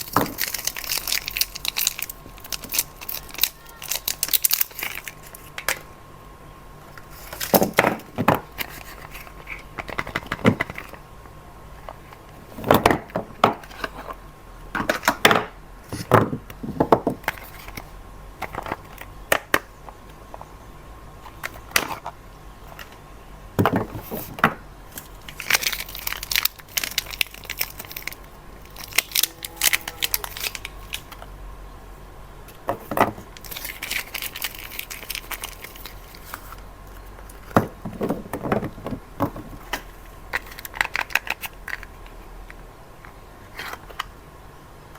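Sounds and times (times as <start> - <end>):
packaging crinkling and tearing: 0.0 - 5.8, 24.9 - 31.3, 33.2 - 37.6, 39.7 - 42.2.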